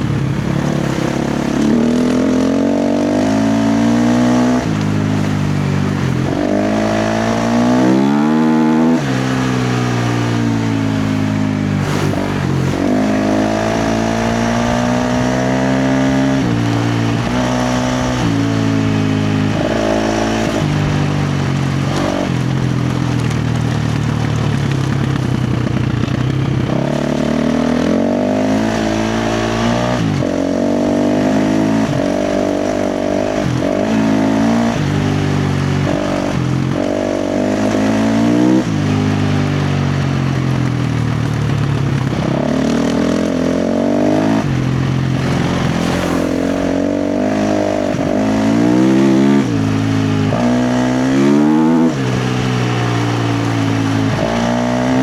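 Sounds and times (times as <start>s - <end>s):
dirt bike engine revving: 0.0s - 55.0s.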